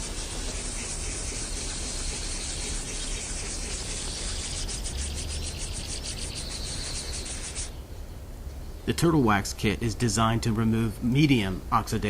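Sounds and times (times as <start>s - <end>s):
sandpaper rasping on plastic: 0.0s - 7.7s
crickets chirping: 0.0s - 7.8s.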